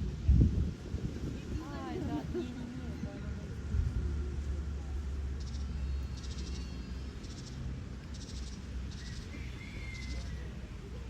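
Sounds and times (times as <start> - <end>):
surf rumble: 0.0 - 4.2
wind: 0.0 - 11.0
short whistled call: 8.9 - 10.6.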